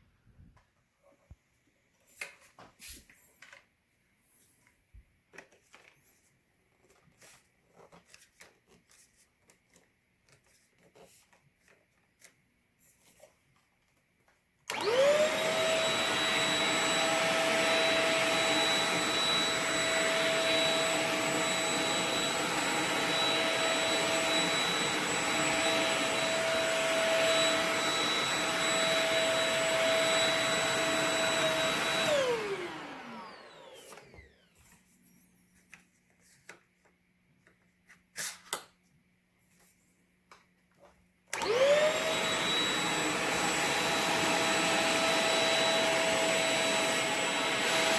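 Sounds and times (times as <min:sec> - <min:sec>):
stick vacuum motor whining: 0:14.7 - 0:34.6, 0:41.3 - 0:47.9.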